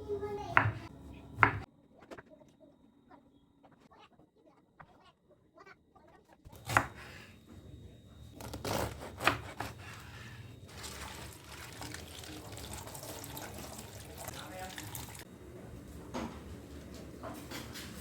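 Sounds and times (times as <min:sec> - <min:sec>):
tap water running into sink: 0:10.8 - 0:15.2.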